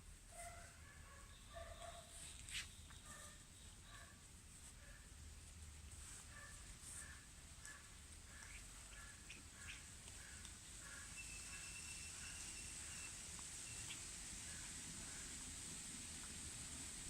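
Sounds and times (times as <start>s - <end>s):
faint bird chirps: 7.0s - 15.3s
thin steady whistle: 11.1s - 13.9s.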